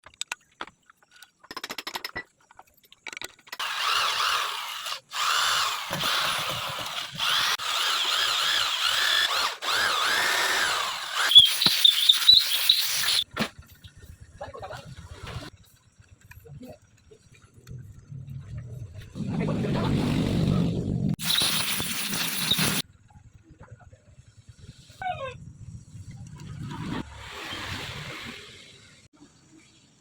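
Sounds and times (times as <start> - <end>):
drill squeal: 3.6 - 13.2, 21.2 - 22.8
power drill running under load: 3.6 - 13.2, 21.2 - 22.8.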